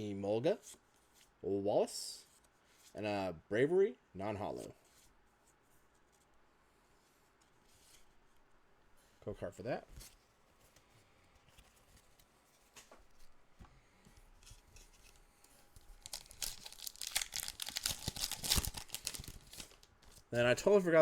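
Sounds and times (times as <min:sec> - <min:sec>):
foil wrapper crinkling and tearing: 0:15.8 - 0:20.2.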